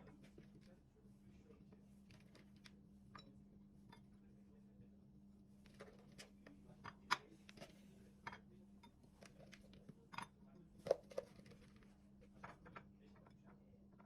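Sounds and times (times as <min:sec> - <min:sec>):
faint steady hum: 0:00.0 - 0:14.0
dishes and cutlery clinking: 0:06.8 - 0:11.7.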